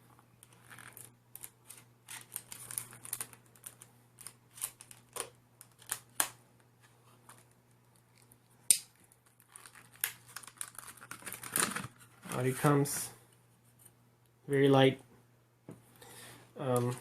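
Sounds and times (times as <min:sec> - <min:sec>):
packaging crinkling and snapping: 0:00.4 - 0:06.4, 0:07.2 - 0:12.5.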